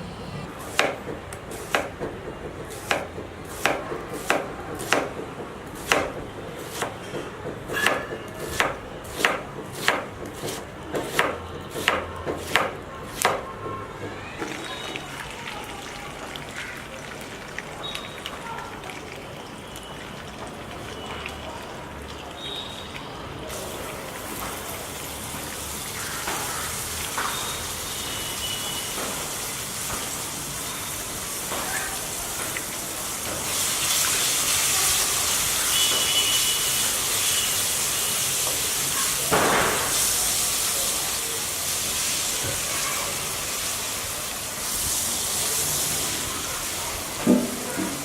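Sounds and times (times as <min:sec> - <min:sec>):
chicken sizzling in a pan: 0:23.5 - 0:47.6.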